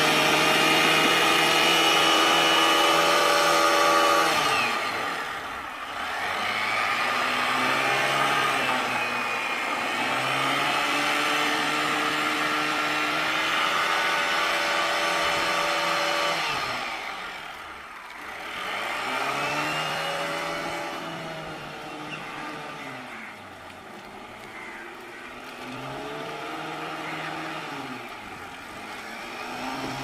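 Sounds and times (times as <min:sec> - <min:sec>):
scooter engine revving: 0:00.0 - 0:30.0.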